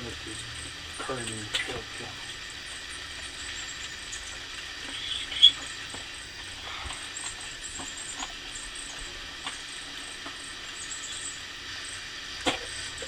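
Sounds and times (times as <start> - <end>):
small birds chirping: 0.0 - 13.0
sharp loud bird peep: 4.9 - 5.7.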